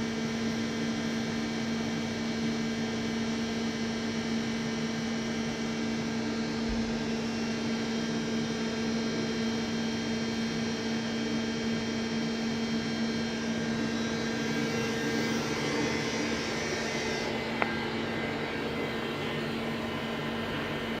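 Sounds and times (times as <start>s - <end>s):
lathe machine hum: 11.7s - 21.0s.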